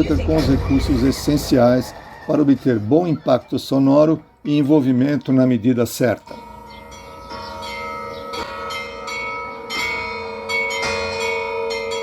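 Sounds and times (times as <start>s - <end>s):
bell-like chimes ringing: 6.3s - 12.0s.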